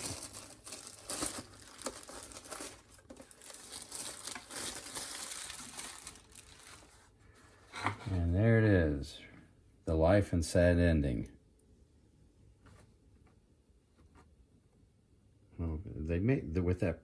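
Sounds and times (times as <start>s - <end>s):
packaging crinkling and rustling: 0.0s - 8.1s.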